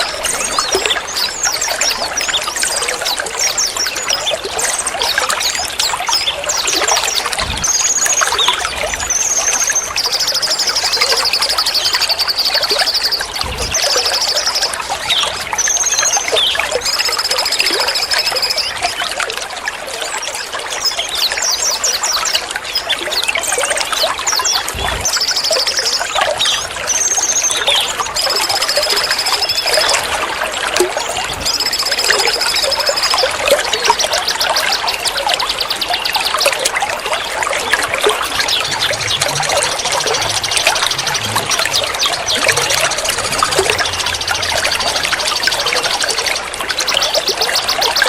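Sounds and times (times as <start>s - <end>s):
water trickling and splashing: 0.0s - 48.0s
birds chirping: 30.9s - 48.0s.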